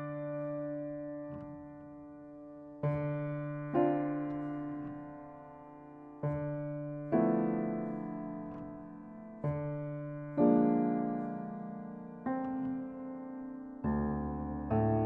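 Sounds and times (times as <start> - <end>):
piano playing slow chords: 0.0 - 15.0.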